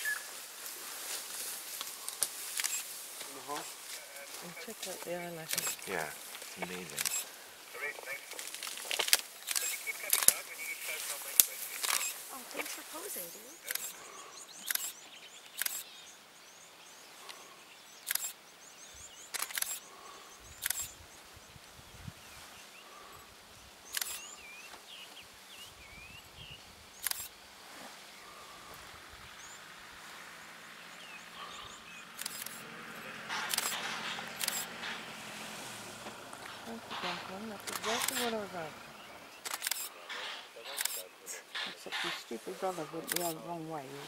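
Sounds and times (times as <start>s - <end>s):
faint bird chirping: 0.0s - 8.5s, 9.2s - 44.0s
camera shutters clicking: 2.5s - 2.9s, 6.6s - 7.3s, 8.5s - 10.5s, 11.3s - 12.2s, 13.6s - 14.0s, 14.6s - 15.0s, 15.6s - 15.8s, 18.1s - 18.4s, 19.3s - 19.8s, 23.9s - 24.2s, 27.0s - 27.3s, 32.2s - 32.6s, 33.3s - 35.0s, 36.9s - 38.4s, 39.4s - 42.2s, 43.0s - 43.4s.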